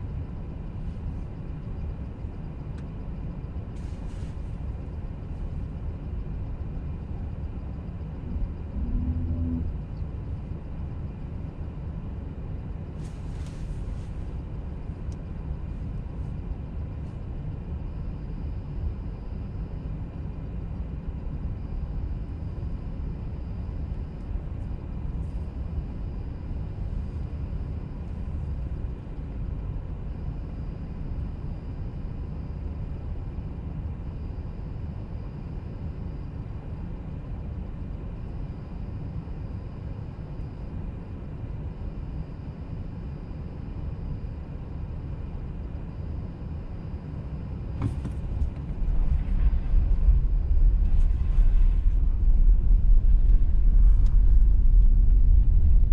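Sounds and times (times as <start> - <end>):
car road and engine rumble: 6.8 - 11.0, 47.6 - 55.9.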